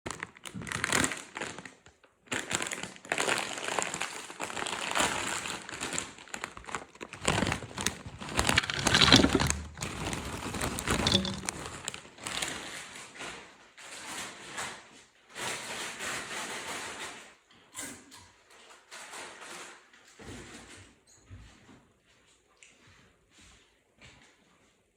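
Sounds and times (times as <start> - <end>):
chip bag crinkling: 0.1 - 12.8
chips being crunched: 7.3 - 12.4.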